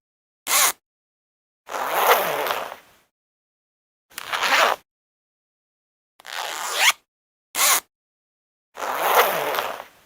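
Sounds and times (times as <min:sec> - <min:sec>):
zipper being pulled: 0:00.5 - 0:00.8, 0:01.7 - 0:02.8, 0:04.2 - 0:04.8, 0:06.2 - 0:07.9, 0:08.8 - 0:10.0.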